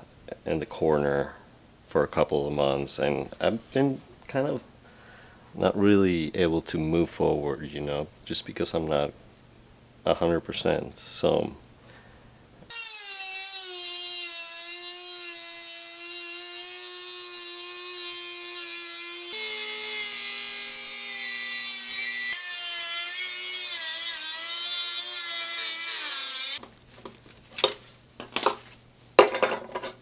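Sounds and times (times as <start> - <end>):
power tool grinding steel: 12.7 - 26.6.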